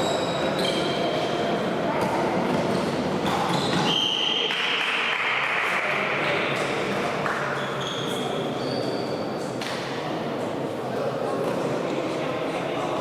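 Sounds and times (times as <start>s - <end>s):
sports shoes squeaking on court: 0.0s - 1.1s, 2.5s - 4.4s, 7.6s - 9.2s
sports hall background noise: 0.0s - 13.0s.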